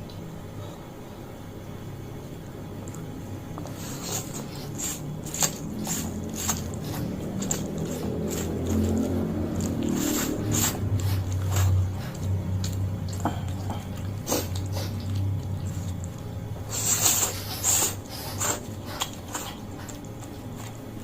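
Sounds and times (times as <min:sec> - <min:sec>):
low hum: 0:00.0 - 0:21.0
wet mouth chewing smacks: 0:03.6 - 0:20.8.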